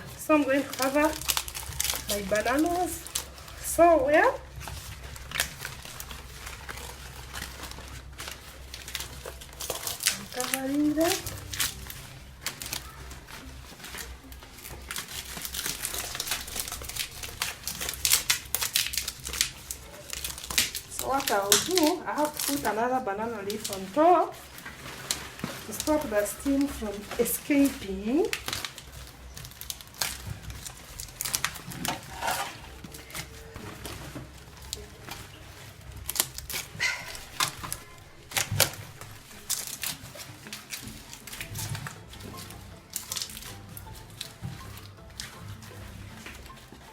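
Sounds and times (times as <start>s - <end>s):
banana leaves crackling and rustling: 0.0s - 46.9s.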